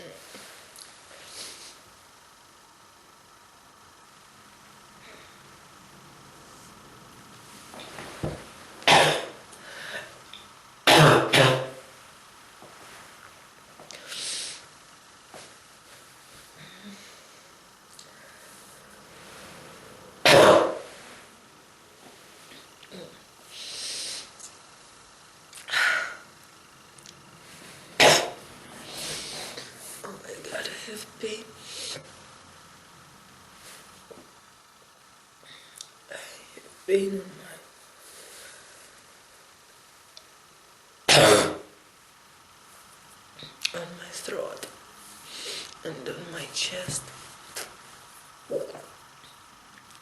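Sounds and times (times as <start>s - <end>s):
person coughing hard: 8.9s - 9.4s, 10.9s - 11.8s, 20.2s - 20.9s, 28.0s - 28.4s, 41.1s - 41.7s.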